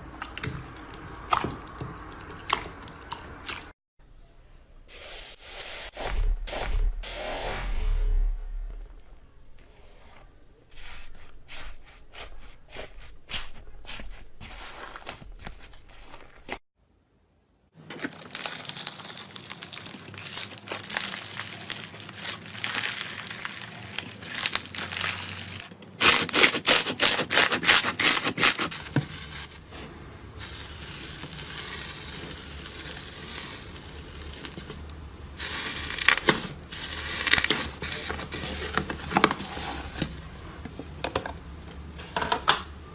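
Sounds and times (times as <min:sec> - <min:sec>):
slime crackling and popping: 0:17.9 - 0:28.6.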